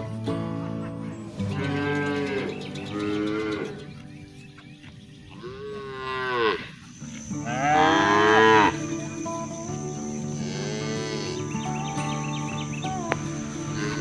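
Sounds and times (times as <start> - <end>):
cattle mooing: 0.9 - 4.0, 5.3 - 6.8, 7.4 - 9.3, 10.0 - 11.8, 13.0 - 14.0.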